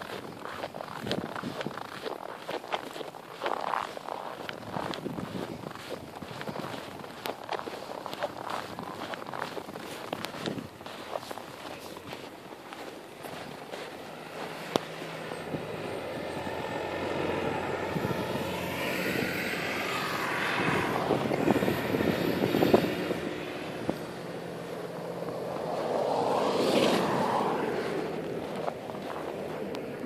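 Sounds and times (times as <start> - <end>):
vehicles driving past on snow: 0.0 - 30.0.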